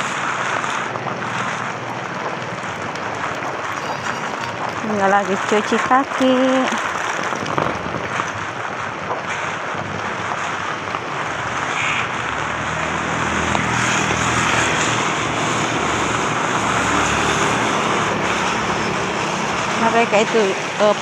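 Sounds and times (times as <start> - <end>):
heavy rain falling: 0.0 - 21.0
vehicle engine rumbling past: 7.2 - 21.0.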